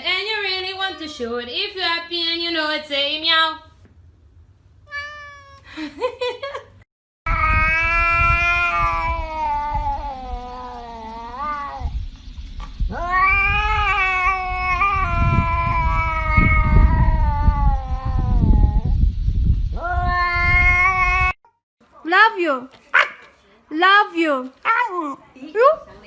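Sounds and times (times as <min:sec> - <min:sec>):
cat yowling: 0:04.9 - 0:05.7, 0:07.3 - 0:11.9, 0:12.9 - 0:18.9, 0:19.8 - 0:21.4.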